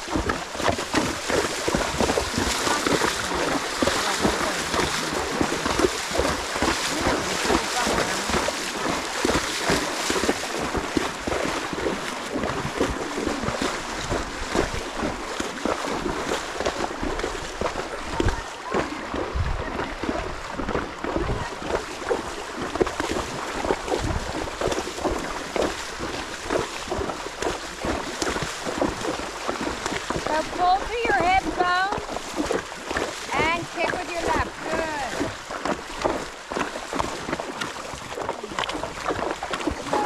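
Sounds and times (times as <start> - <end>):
hooves splashing in water: 0.0 - 40.0
wind buffeting microphone: 17.4 - 21.8.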